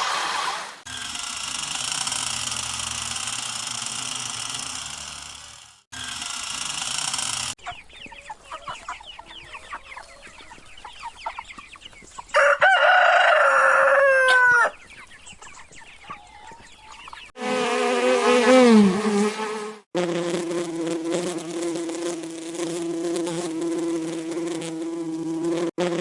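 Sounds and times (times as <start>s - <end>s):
loud buzzing sound: 0.8s - 7.6s
chickens clucking: 7.6s - 12.6s
rooster crowing: 12.3s - 14.8s.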